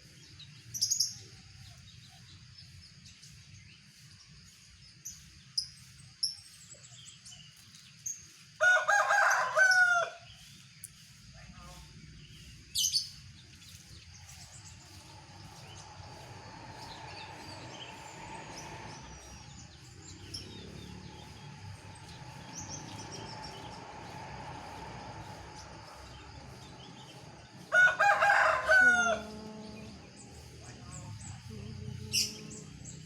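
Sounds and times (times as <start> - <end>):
small birds chirping: 0.0 - 33.0
rooster crowing: 8.6 - 10.3, 22.3 - 30.5.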